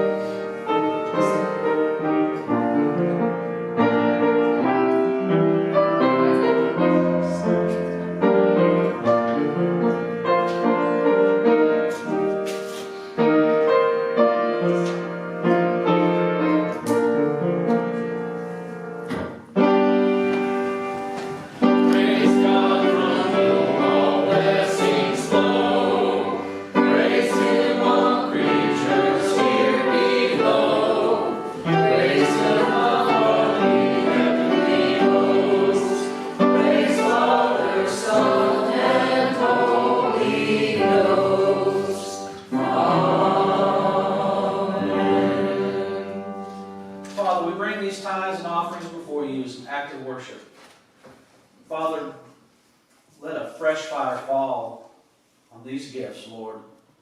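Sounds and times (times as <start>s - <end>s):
slow piano piece: 0.0s - 49.4s
voices singing: 21.6s - 46.5s.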